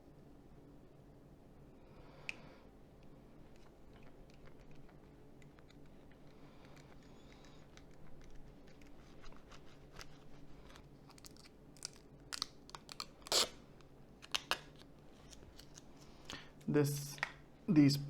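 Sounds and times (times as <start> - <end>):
plastic crunch: 3.4 - 16.5.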